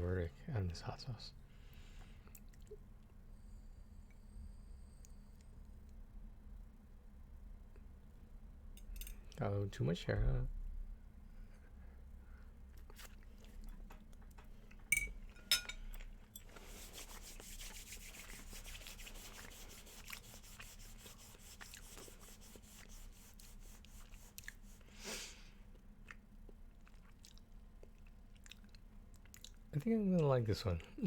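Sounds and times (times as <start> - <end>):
utensil clinking against dish: 14.9 - 16.5
person chewing crunchy food: 19.4 - 20.4, 21.6 - 21.8, 25.7 - 29.6.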